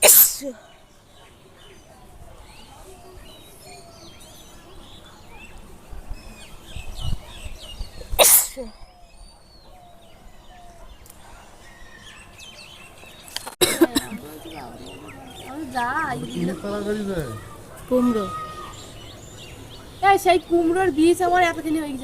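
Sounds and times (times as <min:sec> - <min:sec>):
person sneezing: 0:00.0 - 0:00.5, 0:08.2 - 0:08.7
small birds chirping: 0:00.0 - 0:22.0.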